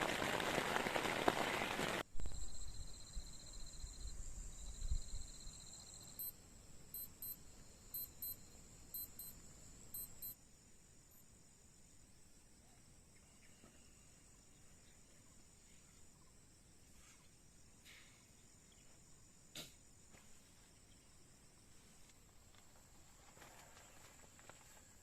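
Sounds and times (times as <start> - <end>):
heavy rain pattering: 0.0 - 2.0
short high chirps: 9.0 - 9.4, 10.0 - 10.4.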